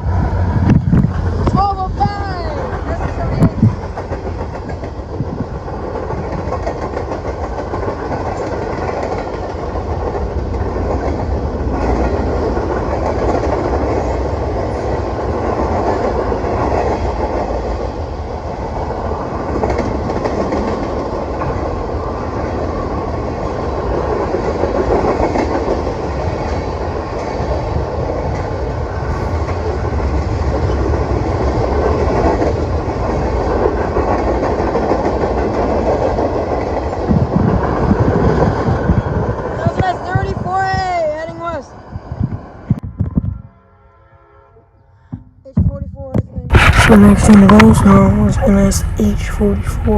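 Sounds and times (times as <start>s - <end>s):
freight train rolling past: 0.0s - 42.7s
steel wheels clattering on rails: 1.0s - 17.7s.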